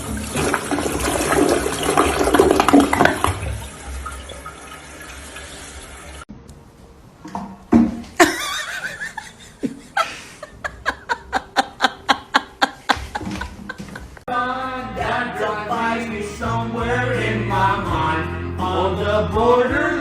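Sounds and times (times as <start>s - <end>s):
person laughing in quick bursts: 8.2s - 14.2s.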